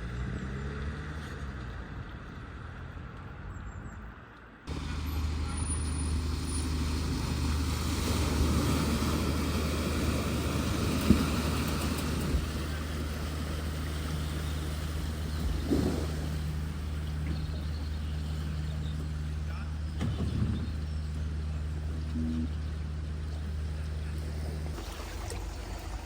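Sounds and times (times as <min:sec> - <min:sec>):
engine humming: 0:04.7 - 0:26.0.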